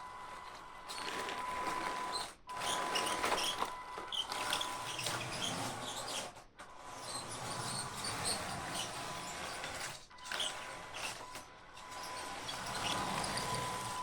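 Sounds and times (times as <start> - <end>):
plastic tracks squeaking: 11.9 - 14.0.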